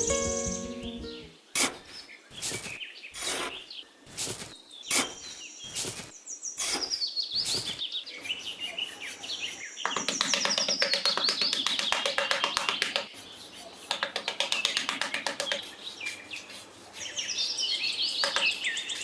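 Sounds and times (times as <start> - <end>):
birds chirping: 8.0 - 19.0
fast patter of clicks: 9.9 - 15.8, 18.2 - 19.0.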